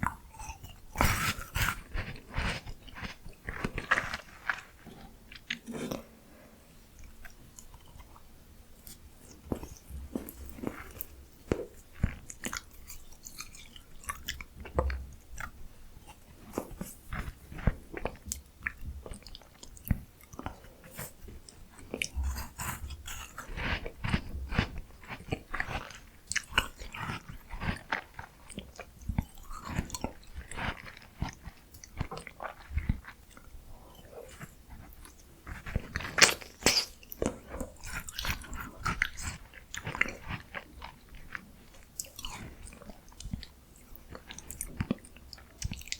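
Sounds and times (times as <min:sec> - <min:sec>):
crunchy chewing of ice cream: 0:00.0 - 0:06.2, 0:07.0 - 0:45.9
wet mouth clicks: 0:32.9 - 0:40.5.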